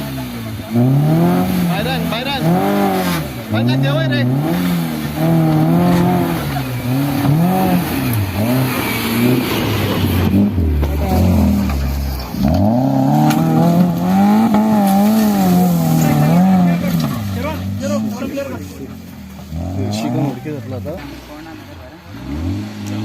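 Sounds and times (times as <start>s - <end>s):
engine revving under load: 0.0s - 23.0s.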